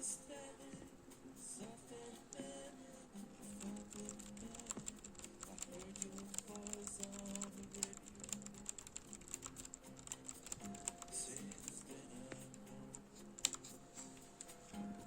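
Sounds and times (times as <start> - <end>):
music playing: 0.0 - 15.0
keyboard keys clicking: 3.4 - 15.0.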